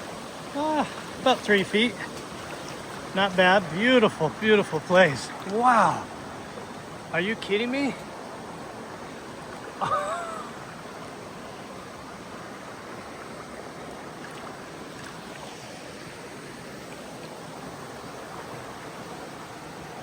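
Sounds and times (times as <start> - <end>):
creek water running over rocks: 0.0 - 20.0
person's voice: 0.6 - 2.1, 3.2 - 6.1, 7.1 - 8.0.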